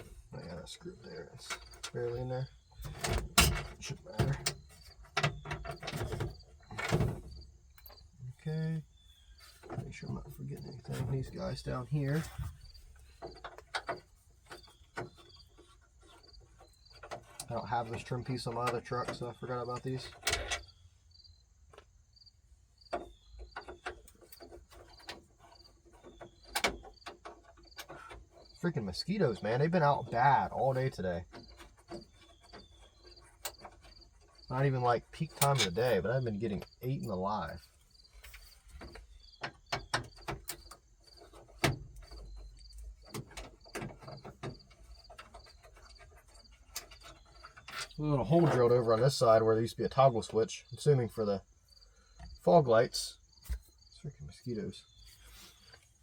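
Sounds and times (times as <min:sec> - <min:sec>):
constant high hum: 0:00.0 - 0:56.0
insects chirping: 0:00.0 - 0:56.0.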